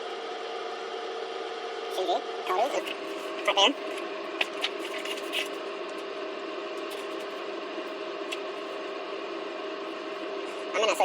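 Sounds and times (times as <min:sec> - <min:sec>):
steady background hum: 0:00.0 - 0:11.0
packaging being handled: 0:02.8 - 0:05.7.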